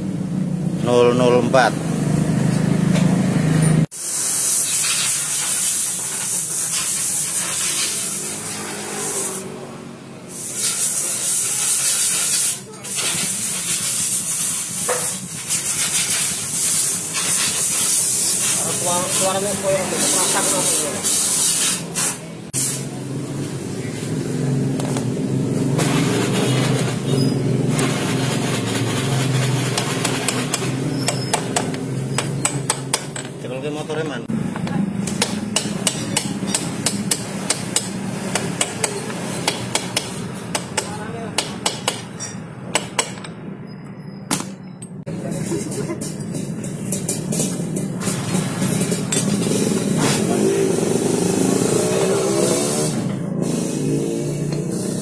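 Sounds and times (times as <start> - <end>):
spray hissing: 3.9 - 9.5, 10.3 - 23.1, 49.4 - 55.0
small engine running: 25.8 - 31.0, 48.0 - 55.0
sharp metallic taps: 29.7 - 33.4, 34.5 - 43.4.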